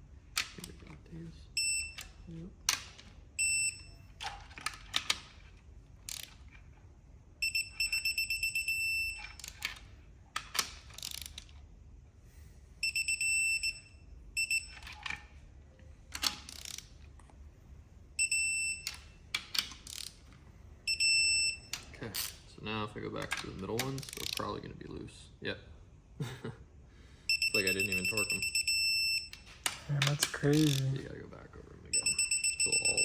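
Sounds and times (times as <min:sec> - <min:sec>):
torque wrench beeping: 0:01.6 - 0:02.2, 0:03.4 - 0:04.1, 0:07.4 - 0:09.6, 0:12.8 - 0:15.0, 0:18.2 - 0:19.2, 0:20.9 - 0:22.4, 0:27.3 - 0:29.5, 0:32.0 - 0:33.0
wrench clicking and grinding: 0:06.0 - 0:06.5, 0:10.4 - 0:11.6, 0:16.2 - 0:17.0, 0:18.8 - 0:20.3, 0:23.3 - 0:24.5, 0:29.3 - 0:31.0.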